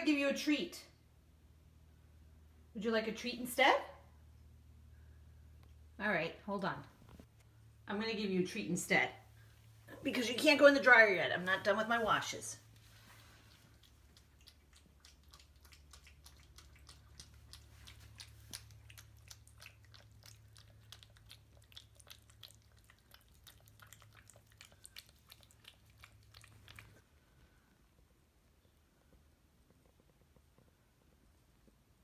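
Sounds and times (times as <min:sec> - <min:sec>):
low steady hum: 0:00.0 - 0:32.0
cat crunching a treat: 0:13.6 - 0:27.0.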